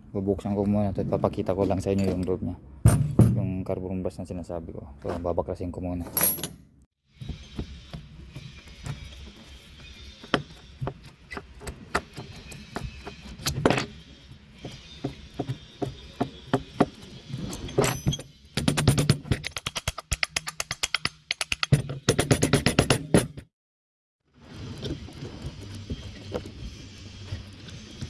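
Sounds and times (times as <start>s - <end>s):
hand tools clinking on metal: 6.1s - 6.6s.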